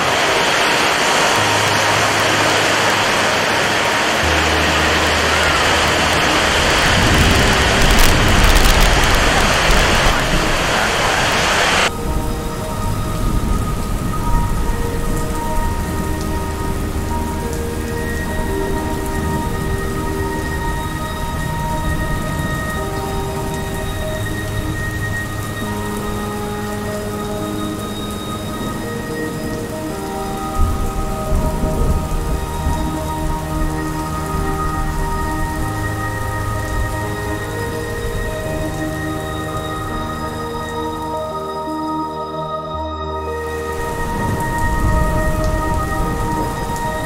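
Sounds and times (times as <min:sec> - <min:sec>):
low rumble: 0:00.0 - 0:22.7
heavy rain hissing: 0:00.0 - 0:47.0
soft sustained music notes: 0:00.0 - 0:47.0.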